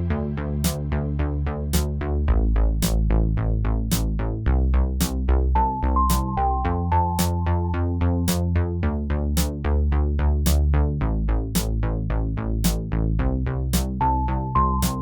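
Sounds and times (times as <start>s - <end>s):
upbeat electronic music: 0.0s - 15.0s.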